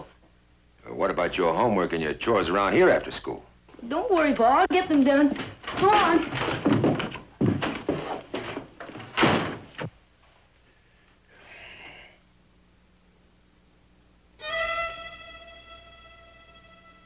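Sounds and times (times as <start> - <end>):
knocks and thumps: 4.8 - 10.0
door banging shut: 5.3 - 9.9
orchestral strings held note: 14.4 - 17.0.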